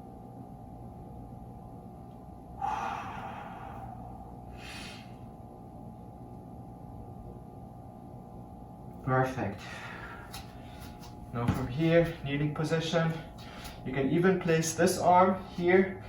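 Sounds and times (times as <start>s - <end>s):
faint steady hum: 0.0s - 16.0s
person breathing hard: 2.6s - 5.4s, 9.6s - 11.0s, 13.3s - 13.8s.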